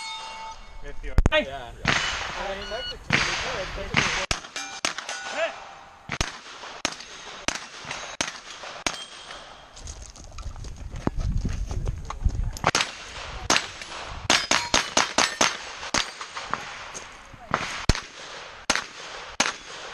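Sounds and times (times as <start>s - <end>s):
gunshots: 1.8s - 9.7s, 12.6s - 19.9s.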